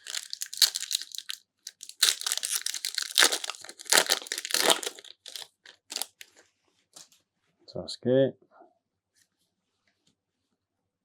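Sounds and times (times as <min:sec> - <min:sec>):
wrapper crinkling: 0:00.0 - 0:06.4.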